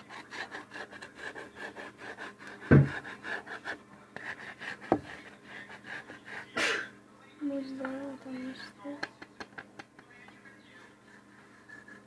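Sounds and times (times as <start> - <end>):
sharp knock on frame: 2.7 - 3.0.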